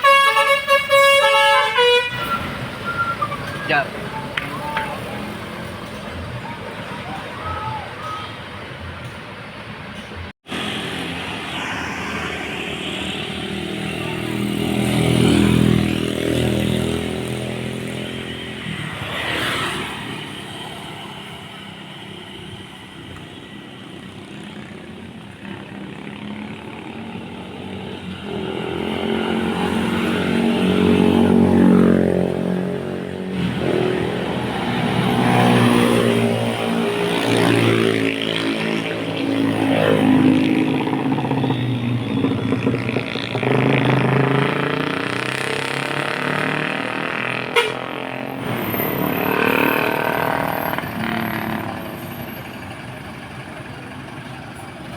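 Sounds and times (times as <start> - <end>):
road traffic passing: 0.0 - 54.9.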